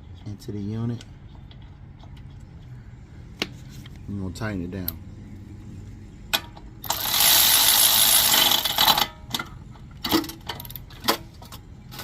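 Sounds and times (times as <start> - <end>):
ratchet wrench clicking: 6.8 - 9.1.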